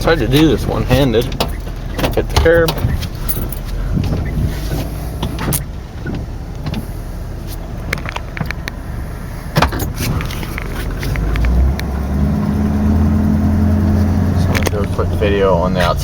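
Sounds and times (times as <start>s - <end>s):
light clicks and knocks: 0.0s - 6.9s
truck engine and road noise: 0.0s - 16.0s.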